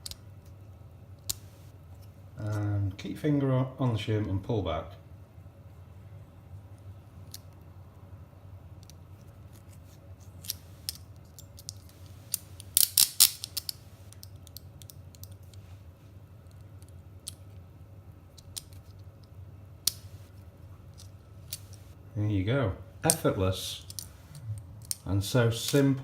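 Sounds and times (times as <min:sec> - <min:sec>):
handcuffs clicking and rattling: 0:10.4 - 0:15.5, 0:20.9 - 0:21.9, 0:23.8 - 0:25.0.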